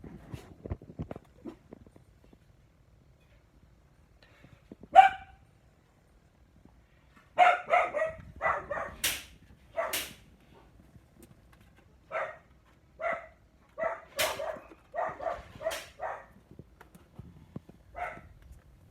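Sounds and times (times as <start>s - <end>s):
puppy barking and yapping: 4.9s - 5.4s, 7.4s - 10.2s, 12.1s - 16.3s, 17.9s - 18.3s.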